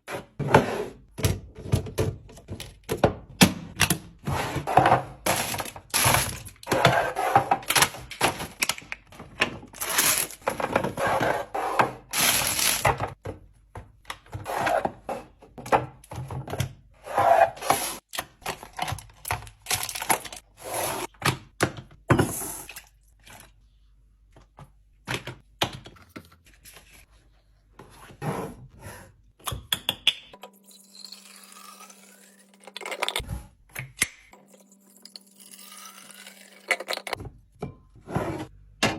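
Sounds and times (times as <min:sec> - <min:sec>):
containers and packaging handled: 0:07.4 - 0:11.0, 0:17.7 - 0:20.5.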